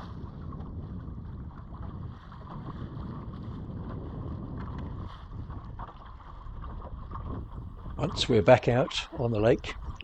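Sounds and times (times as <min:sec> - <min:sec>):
wind noise on microphone: 0:00.0 - 0:10.0
small waves lapping: 0:05.0 - 0:10.0.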